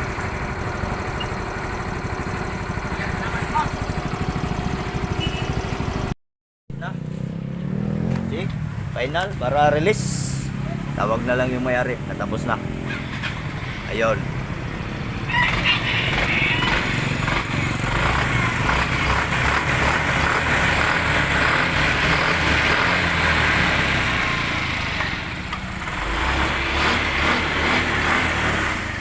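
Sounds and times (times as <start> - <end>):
scooter engine running: 0.0 - 6.2, 12.8 - 29.0.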